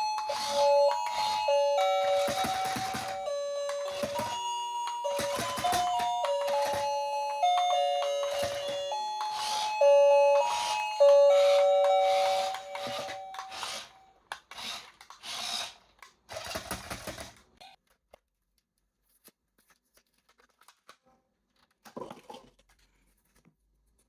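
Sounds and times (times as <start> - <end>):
electronic chime-like melody: 0.0 - 14.1.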